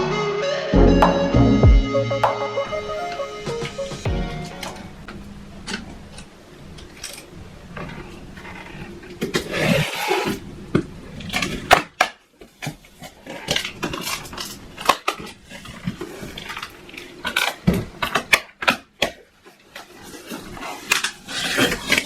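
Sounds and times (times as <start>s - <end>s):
objects clattering and rustling: 12.4s - 18.8s.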